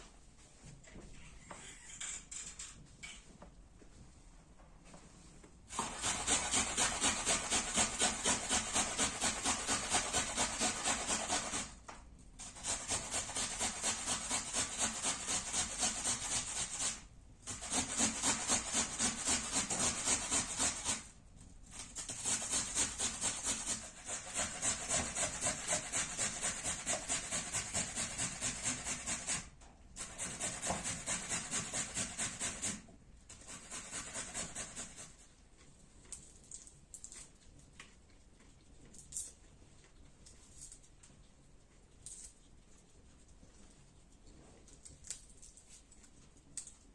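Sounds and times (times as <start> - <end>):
vegetables grated on a grater: 5.7 - 11.8, 12.4 - 35.2.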